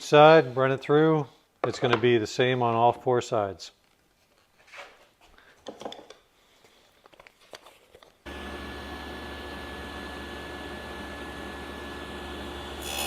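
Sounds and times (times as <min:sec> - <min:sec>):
table saw running: 0:08.3 - 0:13.0.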